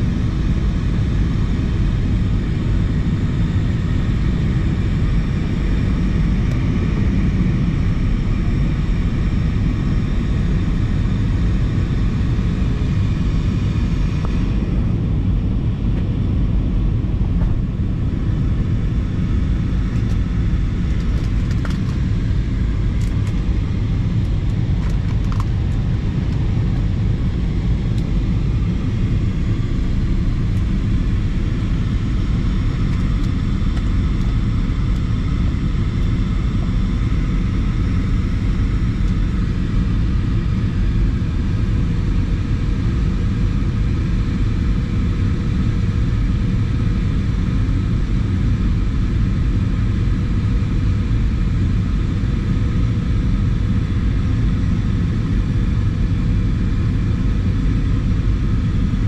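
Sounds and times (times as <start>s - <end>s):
cabin airflow: 0.0s - 44.4s
jet engines rumbling: 0.0s - 59.0s.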